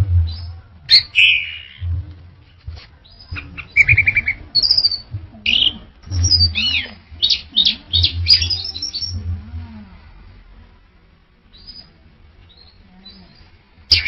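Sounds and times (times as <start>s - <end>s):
thrush singing: 3.1s - 14.0s.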